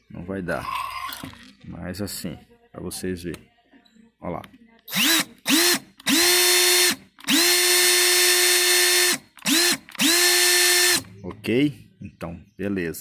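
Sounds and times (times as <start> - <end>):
cordless drill motor whining: 4.9 - 11.1.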